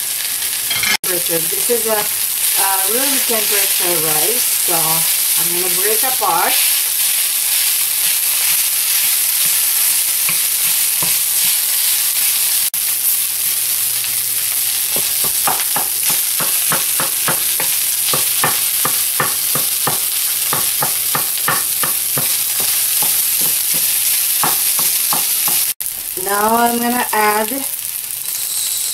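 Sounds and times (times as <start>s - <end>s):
rice sizzling in frying pan: 0.0s - 28.9s
utensil striking pan: 5.0s - 12.5s, 14.8s - 25.8s.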